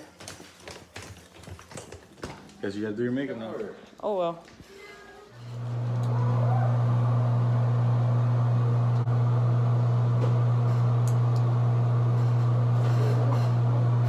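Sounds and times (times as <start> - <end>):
electric motor appliance humming: 5.4 - 14.0.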